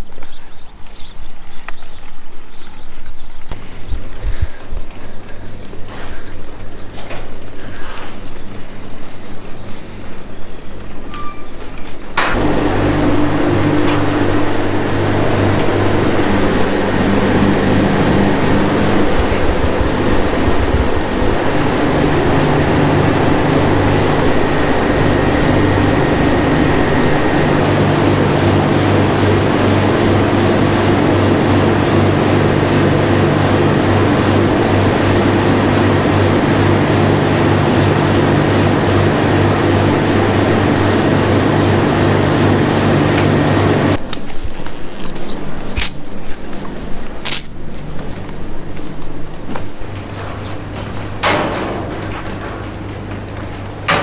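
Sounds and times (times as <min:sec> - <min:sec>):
vehicle engine running: 0:12.3 - 0:44.0.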